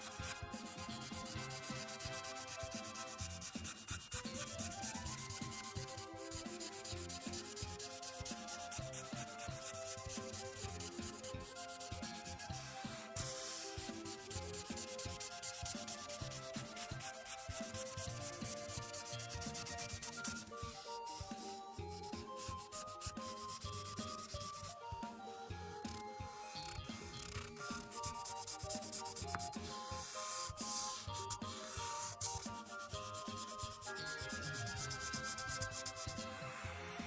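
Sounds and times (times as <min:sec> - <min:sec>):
marker rubbing across paper: 0:00.0 - 0:24.8, 0:26.6 - 0:36.4
soft background music: 0:00.0 - 0:37.0.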